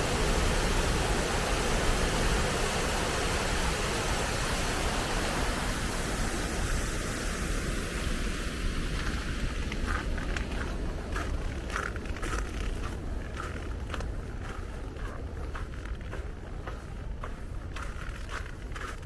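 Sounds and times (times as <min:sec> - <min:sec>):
water rushing over a dam: 0:00.0 - 0:11.6.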